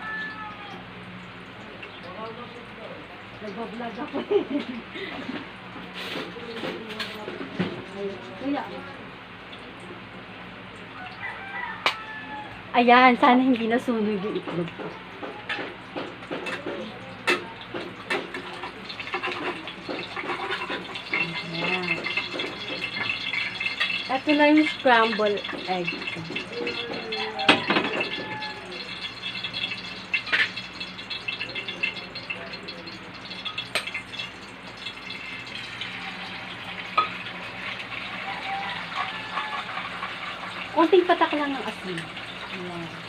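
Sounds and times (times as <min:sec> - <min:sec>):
eggs sizzling in frying pan: 0:10.8 - 0:43.0
utensil scraping pan: 0:18.4 - 0:30.7.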